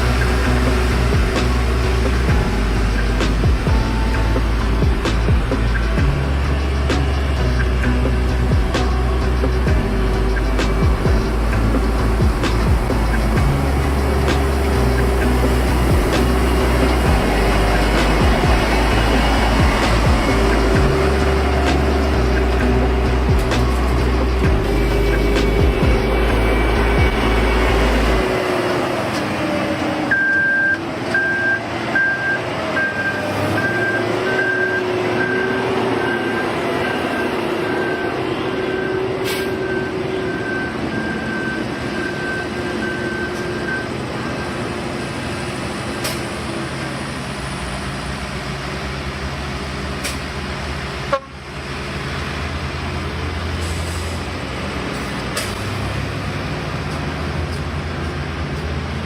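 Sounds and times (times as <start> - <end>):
diesel construction machinery running: 0.0 - 59.0
high-pitched reversing alarm beeps: 30.1 - 45.6.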